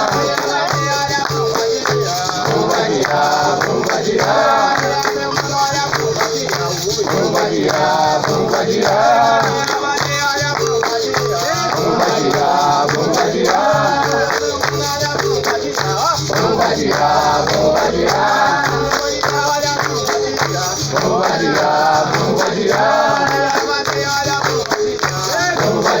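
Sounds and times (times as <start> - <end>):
shaken percussion: 0.0 - 26.0
voices singing together: 0.0 - 26.0
repeating bass line: 11.8 - 19.4.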